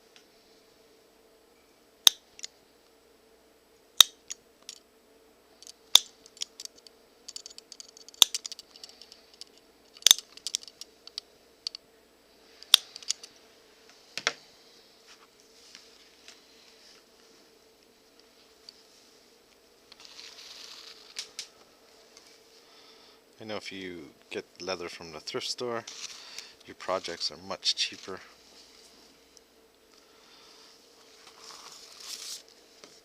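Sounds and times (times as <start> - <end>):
faint steady hum: 0.0 - 33.0
needle and thread scraping leather: 20.0 - 21.2, 25.8 - 26.2.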